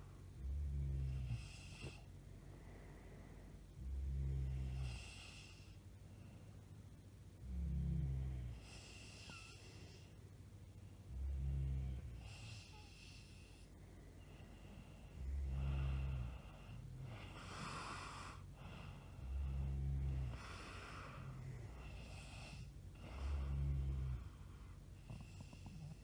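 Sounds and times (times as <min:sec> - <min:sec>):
woman snoring: 0:03.8 - 0:05.8, 0:07.5 - 0:10.1, 0:11.1 - 0:13.7, 0:14.4 - 0:26.0
breathy exhales: 0:12.2 - 0:26.0.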